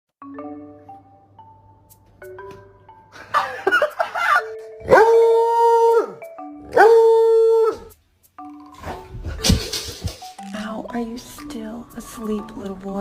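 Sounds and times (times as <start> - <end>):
light marimba tune: 0.2 - 4.9
dog howling: 4.8 - 7.9.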